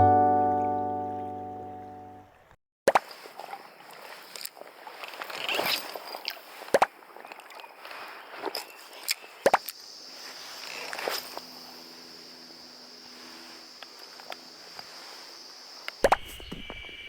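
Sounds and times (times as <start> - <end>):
splashy rustling handling noises: 3.0 - 9.2
high insect buzz: 9.4 - 17.0.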